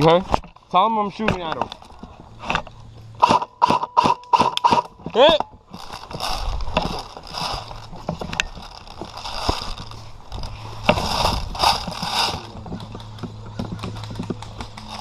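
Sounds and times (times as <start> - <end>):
steady low hum: 0.0 - 15.0
airsoft gunfire clicks and pops: 3.2 - 5.0.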